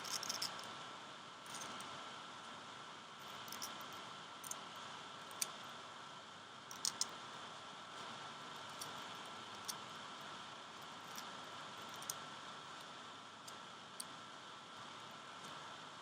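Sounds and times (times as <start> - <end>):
small plastic parts clicking: 0.0 - 0.7, 3.3 - 4.6, 5.3 - 5.6, 6.7 - 7.2, 11.0 - 12.2
steady background hiss: 0.0 - 16.0.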